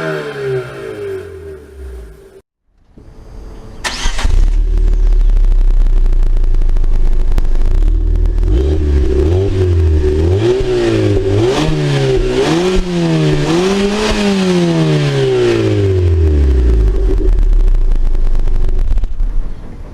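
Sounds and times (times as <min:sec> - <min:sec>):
car engine idling and revving: 0:00.0 - 0:02.4, 0:03.0 - 0:19.9.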